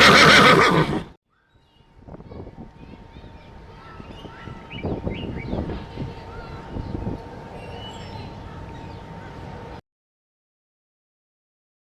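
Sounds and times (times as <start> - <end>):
noisy background: 1.7 - 9.8.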